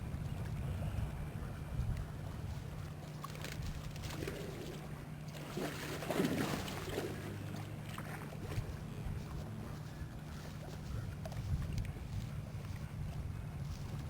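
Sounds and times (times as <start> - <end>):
boat motor humming: 0.0 - 14.0.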